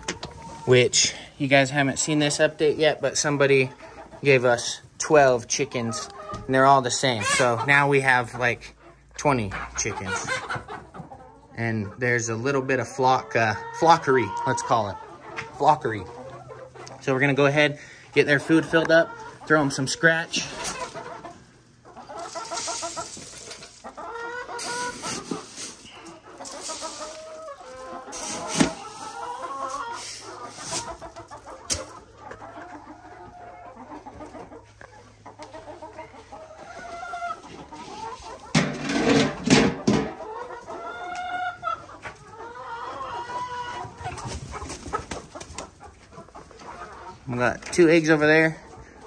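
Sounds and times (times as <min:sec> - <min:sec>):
chickens clucking: 0:00.0 - 0:49.0
rustling and clattering: 0:22.2 - 0:24.0, 0:24.6 - 0:32.0, 0:38.4 - 0:40.2.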